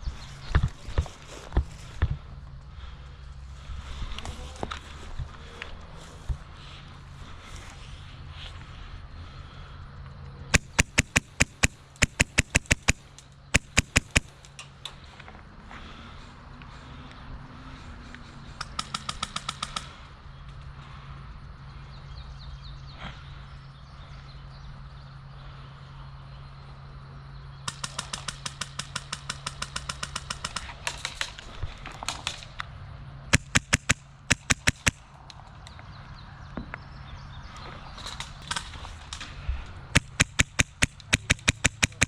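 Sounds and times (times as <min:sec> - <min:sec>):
airsoft guns firing bursts: 0:10.5 - 0:14.4, 0:18.6 - 0:20.0, 0:27.7 - 0:31.4, 0:33.3 - 0:35.1, 0:39.9 - 0:42.0.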